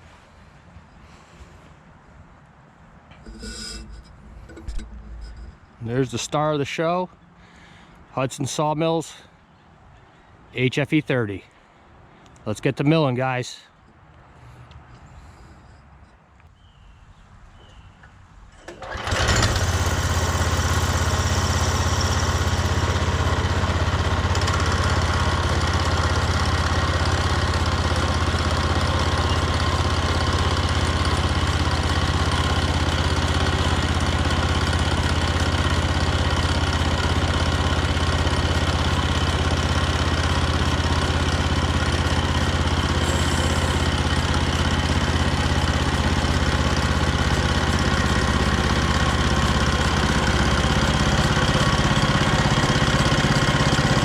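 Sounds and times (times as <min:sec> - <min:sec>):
sawmill engine running: 0:03.1 - 0:06.9, 0:18.6 - 0:54.0.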